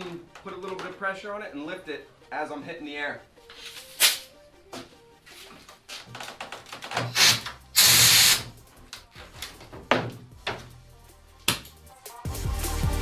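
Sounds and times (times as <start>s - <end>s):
compressed air blasting: 7.1s - 8.5s.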